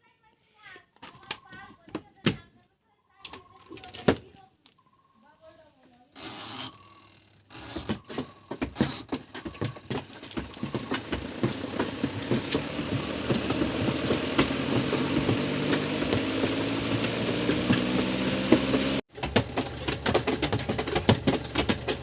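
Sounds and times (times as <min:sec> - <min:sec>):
washing machine spin motor hum: 0:06.3 - 0:19.0.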